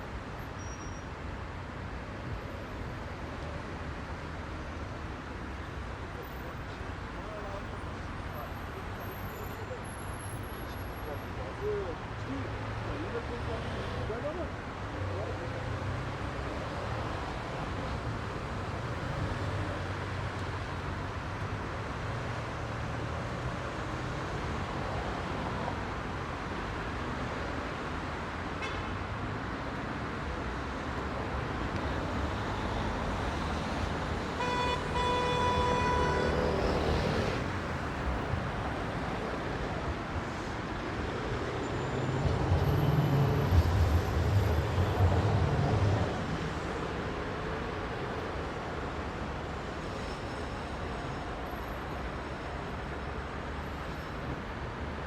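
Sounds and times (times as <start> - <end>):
city traffic noise: 0.0 - 55.0
car horn: 34.3 - 37.5.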